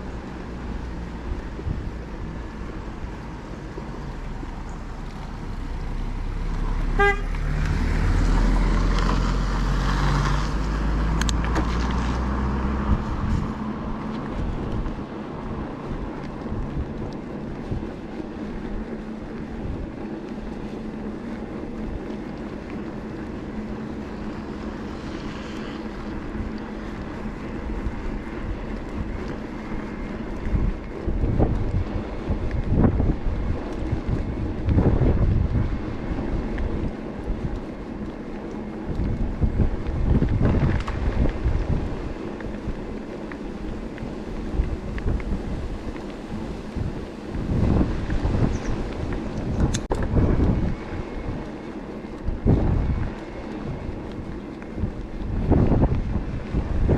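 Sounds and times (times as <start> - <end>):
vehicle passing close: 0.0 - 17.0
wind on microphone: 0.0 - 56.9
horn toot: 6.9 - 7.4.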